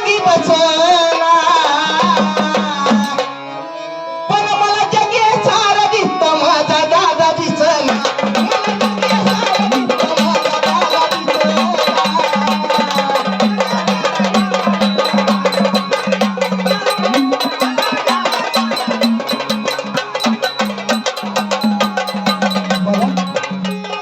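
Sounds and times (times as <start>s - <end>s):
hand drum and wood block rhythm: 0.4s - 3.4s, 7.8s - 24.0s
melody line: 12.9s - 24.0s.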